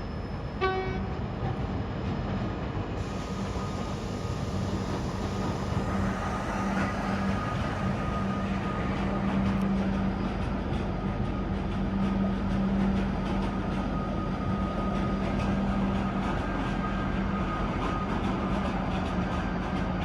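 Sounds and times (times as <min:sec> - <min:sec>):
faint high whine: 0:00.0 - 0:11.5
train running on rails: 0:00.0 - 0:20.0.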